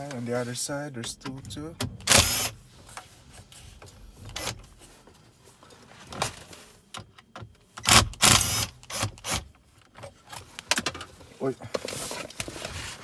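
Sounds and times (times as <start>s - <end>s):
power screwdriver running: 2.1s - 2.5s, 7.9s - 9.4s.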